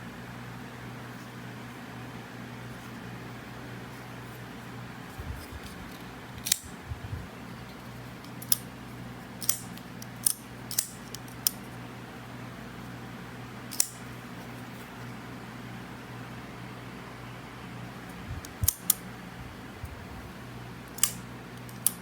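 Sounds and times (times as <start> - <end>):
pocket knife blade clicking: 6.4 - 6.7, 9.4 - 11.6, 13.7 - 14.0.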